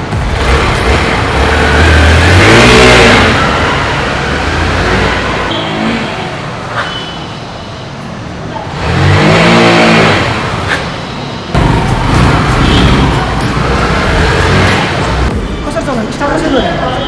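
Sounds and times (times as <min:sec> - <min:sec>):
motorcycle engine revving: 0:00.0 - 0:15.3.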